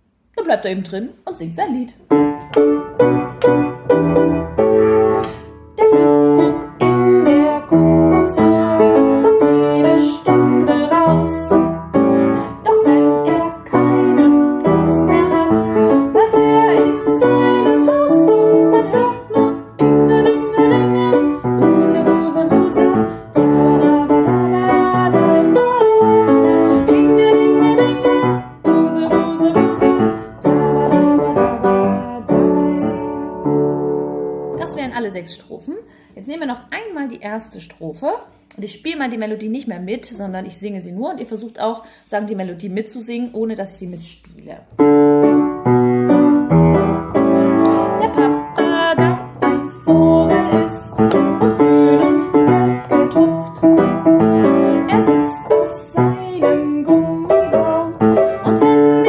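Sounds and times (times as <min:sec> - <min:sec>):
piano playing children's melody: 0:02.1 - 0:35.0, 0:44.8 - 0:59.0.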